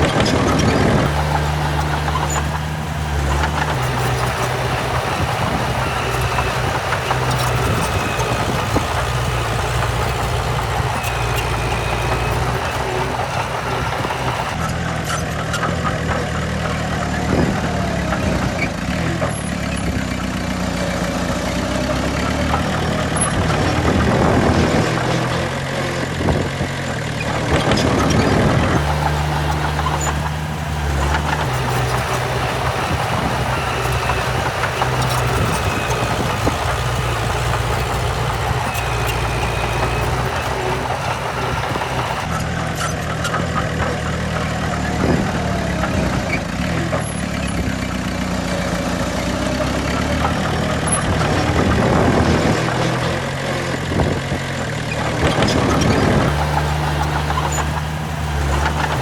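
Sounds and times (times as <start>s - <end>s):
heavy machine diesel engines: 0.9s - 14.6s, 28.8s - 42.5s, 56.3s - 59.0s.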